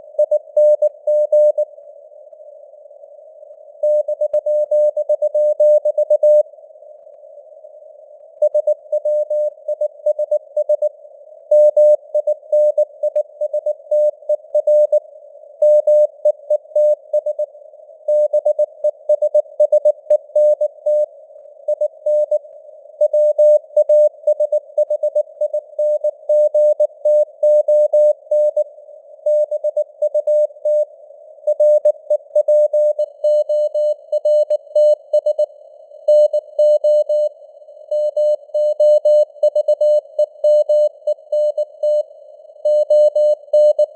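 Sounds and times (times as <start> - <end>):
morse code beeps: 36.1 - 37.3, 37.9 - 42.0, 42.6 - 43.9.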